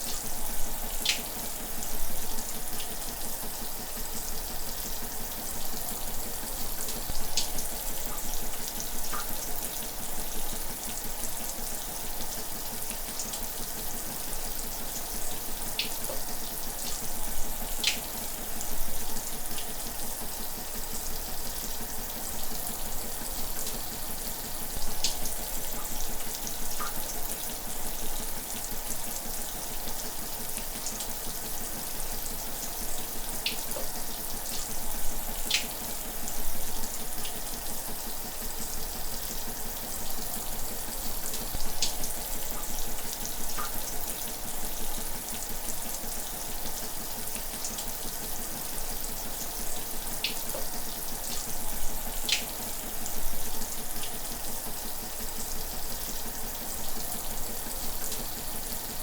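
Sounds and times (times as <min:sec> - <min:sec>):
water splashes and drips: 0:06.9 - 0:09.5, 0:15.6 - 0:18.5, 0:24.6 - 0:27.6, 0:33.3 - 0:37.5, 0:39.8 - 0:46.1, 0:50.2 - 0:54.8.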